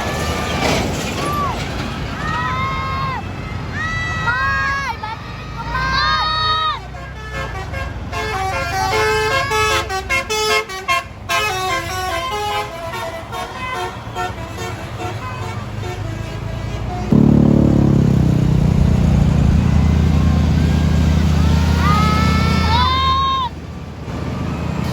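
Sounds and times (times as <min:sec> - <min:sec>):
loud low bus engine: 0:00.0 - 0:24.9
musical bus air horn tune: 0:06.8 - 0:17.4.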